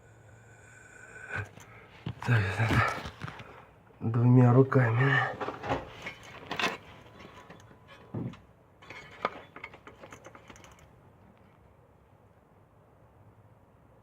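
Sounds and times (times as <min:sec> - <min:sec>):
small clicks and rattles: 0:08.8 - 0:11.0.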